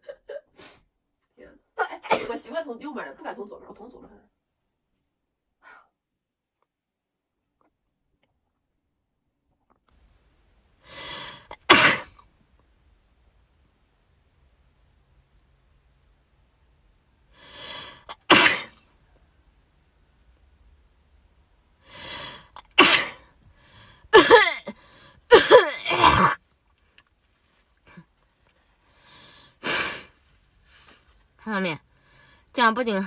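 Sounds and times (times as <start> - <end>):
woman sneezing: 1.9 - 2.5, 11.6 - 12.1, 18.1 - 18.7, 22.8 - 23.2, 24.1 - 24.7, 25.3 - 26.4.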